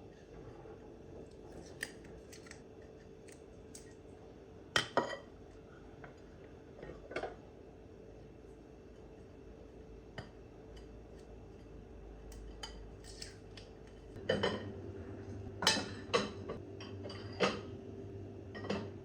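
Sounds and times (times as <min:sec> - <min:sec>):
steady low hum: 0:00.0 - 0:19.0
dishes and metal utensils clinking: 0:15.6 - 0:17.7, 0:18.6 - 0:19.0.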